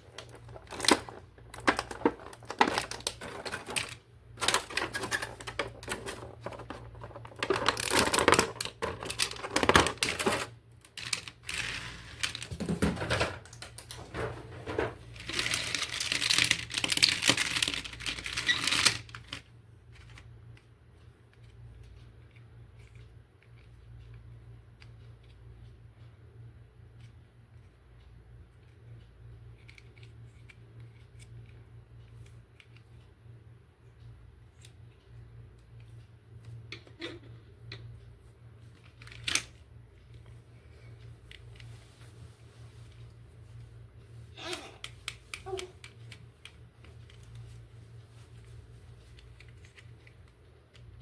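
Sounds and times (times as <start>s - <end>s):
plastic packaging crackling: 0.0s - 12.6s, 13.5s - 19.4s
low steady hum: 0.0s - 51.0s.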